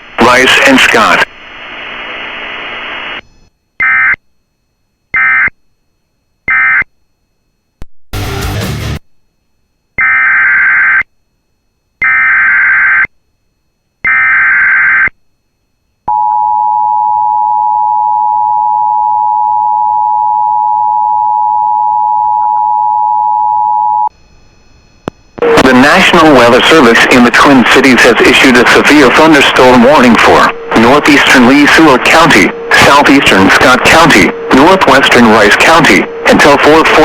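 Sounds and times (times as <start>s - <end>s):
warbling digital data tones: 25.6s - 37.0s.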